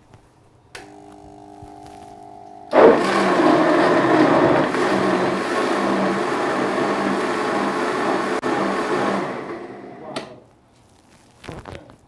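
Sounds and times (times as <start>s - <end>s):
electric blender running: 0.8s - 10.2s.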